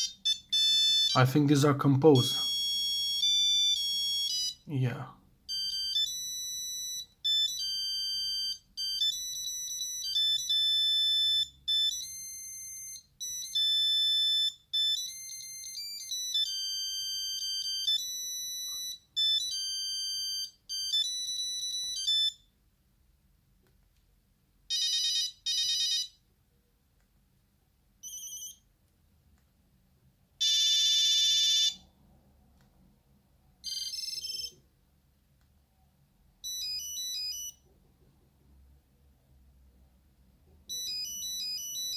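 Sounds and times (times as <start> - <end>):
monophonic ringtone melody: 0.0 - 4.8, 5.5 - 22.4, 24.7 - 26.2, 28.0 - 28.6, 30.4 - 31.8, 33.6 - 34.6, 36.4 - 37.6, 40.7 - 41.9.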